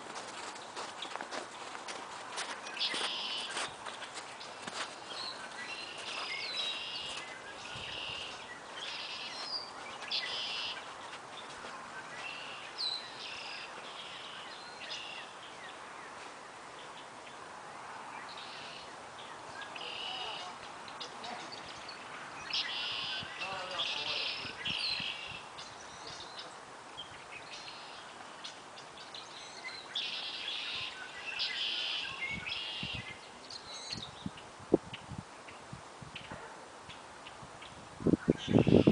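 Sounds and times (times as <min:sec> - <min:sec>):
outdoor background hiss: 0:00.0 - 0:38.9
small birds chirping: 0:02.4 - 0:17.4, 0:18.2 - 0:35.6, 0:36.2 - 0:38.9.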